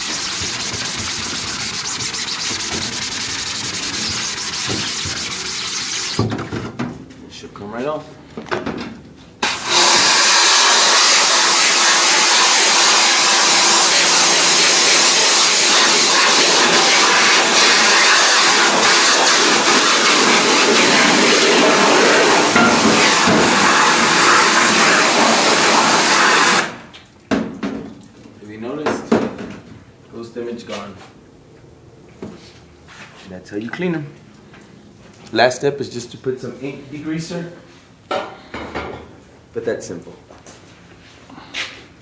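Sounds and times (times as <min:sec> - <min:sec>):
water spray hissing: 0:00.0 - 0:06.2, 0:09.4 - 0:26.6.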